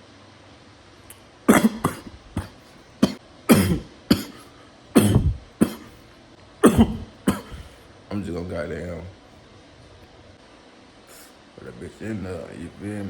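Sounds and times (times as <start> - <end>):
person coughing hard: 1.5 - 6.0, 6.6 - 7.8.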